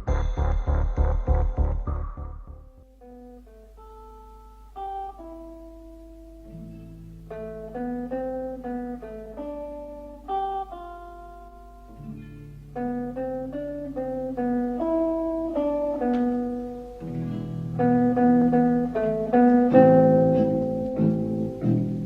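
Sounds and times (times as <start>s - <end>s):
low bass line: 0.0s - 2.9s
guitar picking single notes: 1.8s - 22.0s.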